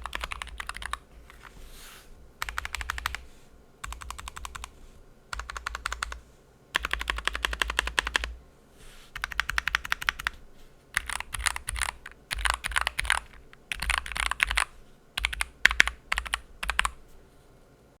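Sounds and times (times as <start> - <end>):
mechanical keyboard typing: 0.0 - 1.5, 2.4 - 3.2, 3.8 - 6.2, 6.8 - 8.4, 9.2 - 10.4, 11.0 - 17.0.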